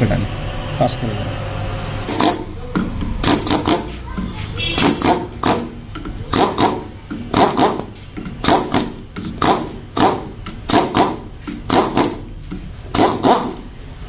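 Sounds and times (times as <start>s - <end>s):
dog barking: 7.4s - 7.9s.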